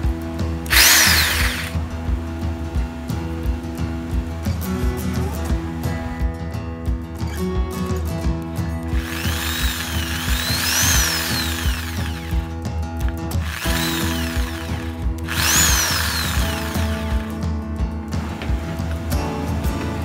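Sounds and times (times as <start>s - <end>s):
jigsaw motor whining: 0.7s - 1.8s, 9.0s - 12.5s, 13.4s - 17.3s.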